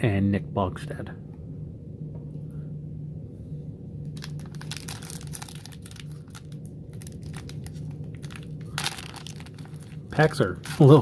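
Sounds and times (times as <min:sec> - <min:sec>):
foil wrapper crinkling and tearing: 0:04.2 - 0:11.0.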